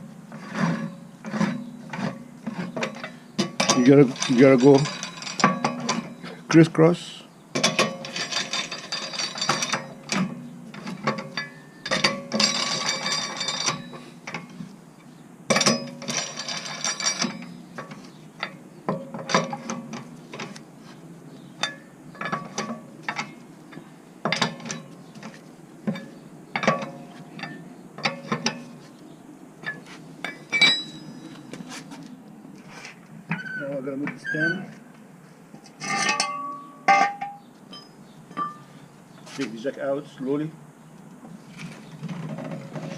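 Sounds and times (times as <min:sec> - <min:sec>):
metal knocks: 0:35.7 - 0:38.7.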